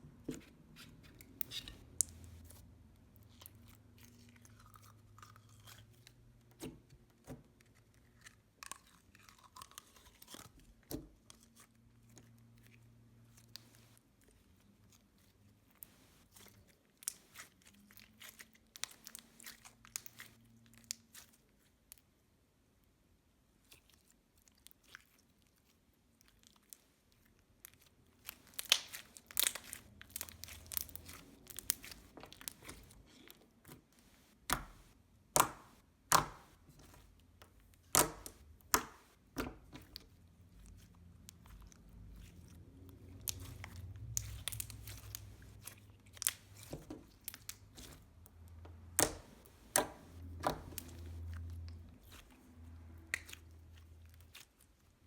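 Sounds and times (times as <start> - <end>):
slime squishing: 0.1 - 22.3, 23.4 - 55.0.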